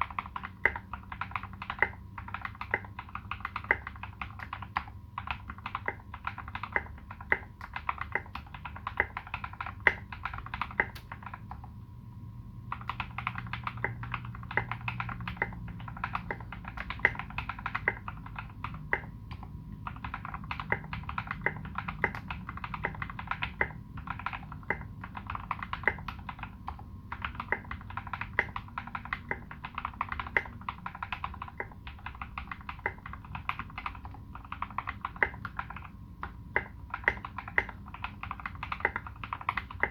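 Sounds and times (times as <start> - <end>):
typing on mechanical keyboard: 0.0 - 11.7, 12.7 - 39.9.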